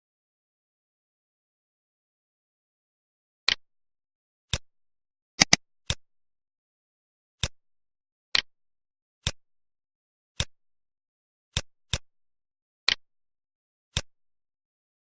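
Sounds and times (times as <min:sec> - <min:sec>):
computer mouse clicking: 0:05.4 - 0:06.0.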